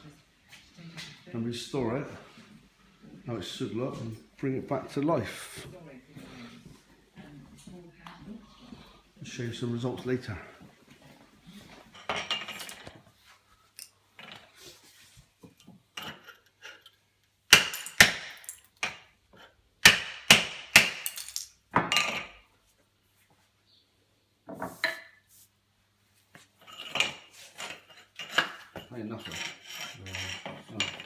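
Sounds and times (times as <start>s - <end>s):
hammer and chisel on tiles: 15.4s - 22.4s, 26.3s - 31.0s.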